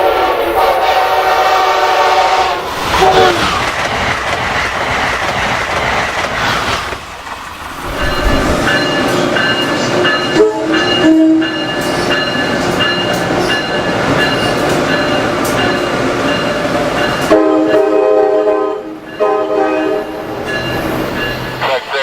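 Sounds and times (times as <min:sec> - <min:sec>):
train air horn blasts: 0:00.0 - 0:03.5, 0:10.4 - 0:11.5, 0:17.3 - 0:20.2
train rumble and clickety-clack: 0:00.0 - 0:22.0.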